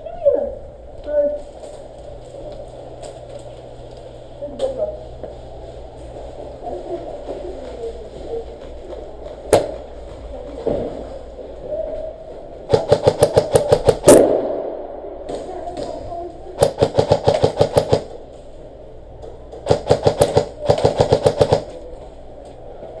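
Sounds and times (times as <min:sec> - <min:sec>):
airsoft guns firing bursts: 0:12.7 - 0:14.5, 0:16.6 - 0:18.2, 0:19.6 - 0:21.8.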